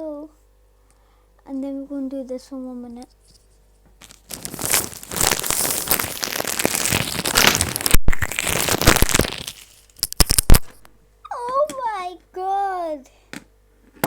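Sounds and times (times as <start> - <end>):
crinkling against microphone: 3.0 - 11.0.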